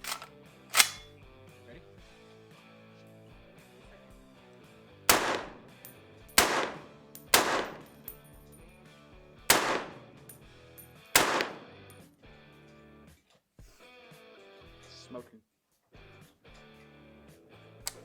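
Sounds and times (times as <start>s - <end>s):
rifle shots: 0.0s - 1.1s, 5.1s - 8.1s, 9.5s - 10.4s, 11.2s - 11.9s
background music: 0.0s - 13.2s, 16.0s - 18.0s.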